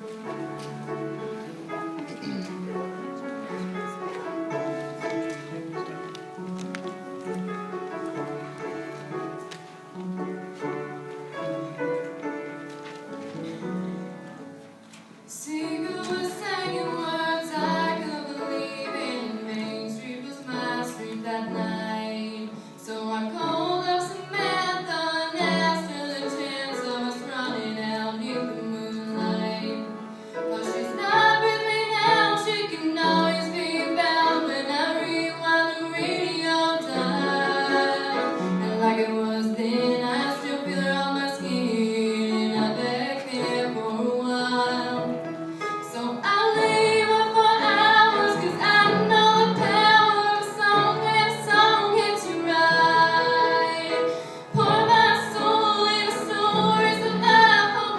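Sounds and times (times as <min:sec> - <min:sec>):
instrumental accompaniment: 0:00.0 - 0:57.9
woman singing country ballad: 0:15.3 - 0:45.2, 0:45.8 - 0:57.9.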